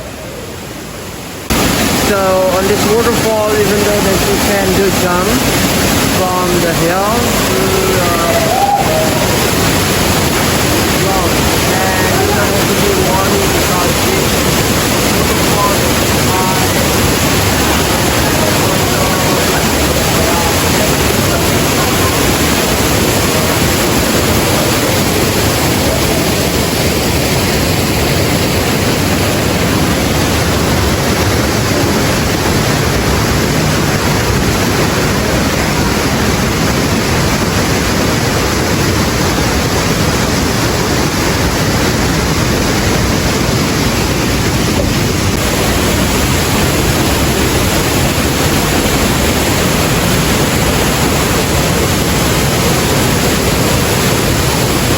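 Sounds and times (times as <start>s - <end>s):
waterfall rushing: 0.0s - 54.9s.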